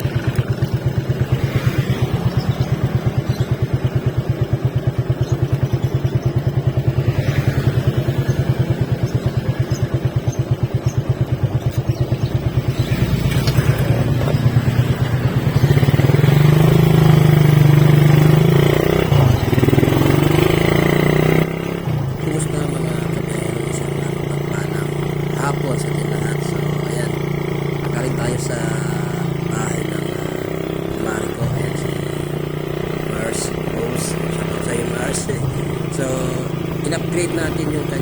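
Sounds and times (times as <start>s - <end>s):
motorcycle engine: 0.0s - 38.0s.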